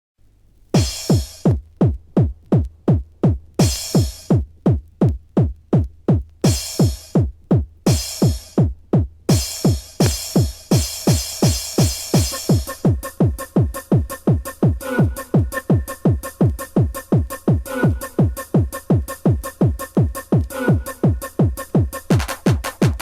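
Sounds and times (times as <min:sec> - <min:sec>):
drum machine kick drum: 0:00.8 - 0:23.0
electronic dance music: 0:09.3 - 0:23.0.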